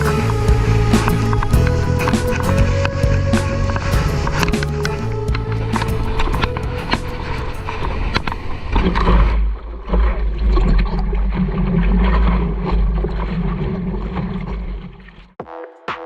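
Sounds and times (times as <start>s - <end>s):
music: 0.0s - 9.3s, 15.4s - 16.0s
wind rumbling on microphone: 0.0s - 15.0s
water rushing and splashing: 0.0s - 15.4s.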